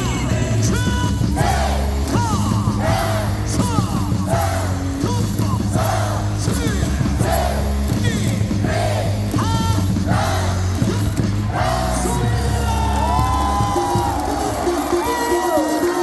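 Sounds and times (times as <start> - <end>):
amplified music with heavy beat: 0.0 - 16.0
crowd singing and shouting: 0.0 - 16.0.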